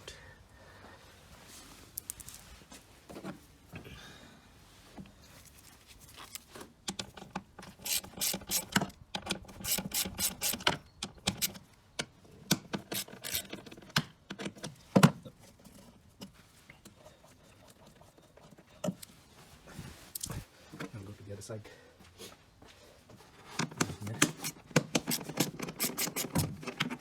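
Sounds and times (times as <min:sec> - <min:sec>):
metal and plastic clatter: 0:06.1 - 0:15.9, 0:23.5 - 0:27.0
ratchet wrench clicking: 0:07.8 - 0:08.8, 0:09.6 - 0:10.7, 0:12.8 - 0:13.6, 0:24.2 - 0:26.4.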